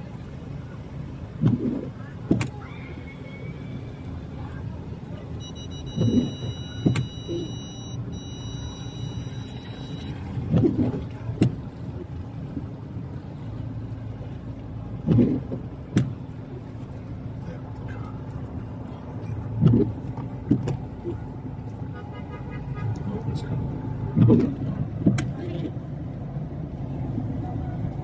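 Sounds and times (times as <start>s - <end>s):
vehicle cabin rumble: 0.0s - 28.0s
high electronic tone: 5.4s - 10.1s.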